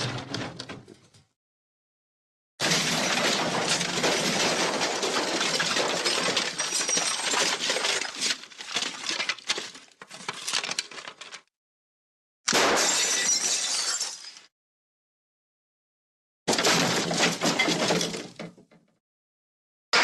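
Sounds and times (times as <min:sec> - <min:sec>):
crash of breaking falling debris: 0:02.6 - 0:11.2, 0:16.5 - 0:18.4.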